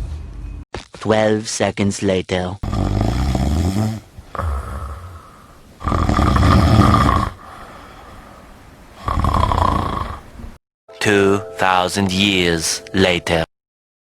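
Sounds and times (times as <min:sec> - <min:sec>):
cat snoring: 0:02.6 - 0:10.6.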